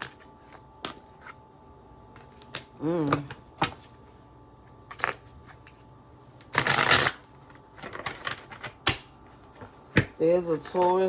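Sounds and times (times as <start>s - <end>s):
cards tapping and clicking: 7.8s - 11.0s.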